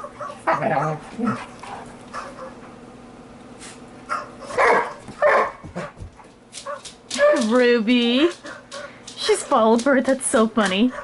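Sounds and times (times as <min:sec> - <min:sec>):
dog barking: 0:04.1 - 0:05.6, 0:06.6 - 0:07.5.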